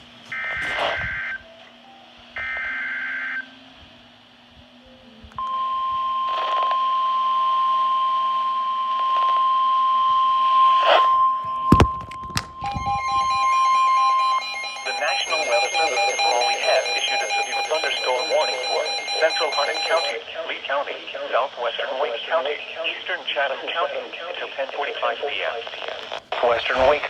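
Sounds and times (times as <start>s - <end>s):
buzzing digital data tones: 12.6s - 20.1s
steady warning alarm tone: 12.6s - 20.2s
radio static pops: 25.6s - 27.0s.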